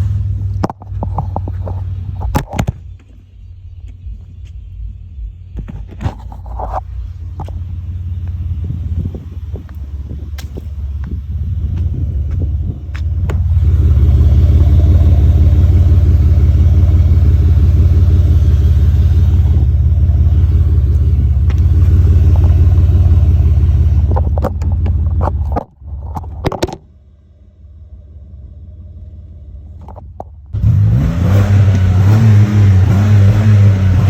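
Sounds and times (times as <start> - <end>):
car exhaust deep rumble: 0.0 - 34.0
sharp clicks and knocks: 23.9 - 26.9.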